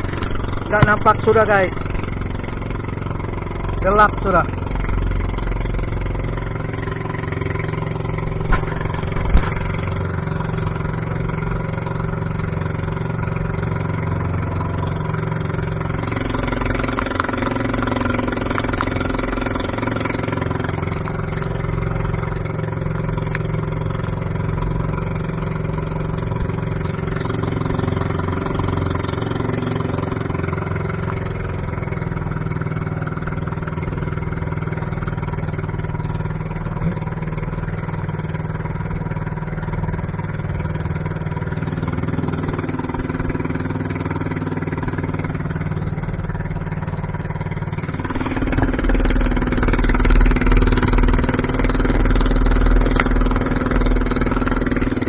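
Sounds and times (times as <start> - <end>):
boat engine running: 0.0 - 55.0
sharp knocks: 8.4 - 9.8.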